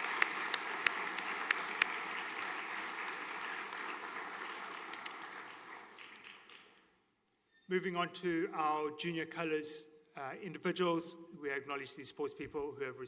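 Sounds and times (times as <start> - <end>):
audience applauding: 0.0 - 6.8.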